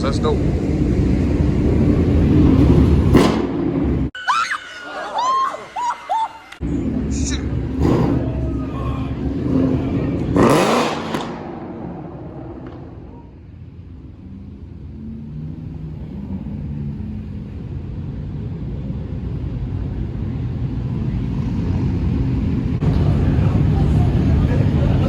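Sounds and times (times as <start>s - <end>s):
car engine revving: 0.0s - 4.1s, 6.6s - 25.0s
low engine rumble: 6.6s - 25.0s.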